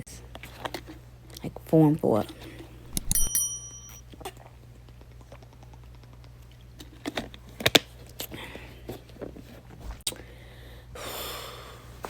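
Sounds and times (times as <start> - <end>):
short high ringing tone: 3.0 - 4.0.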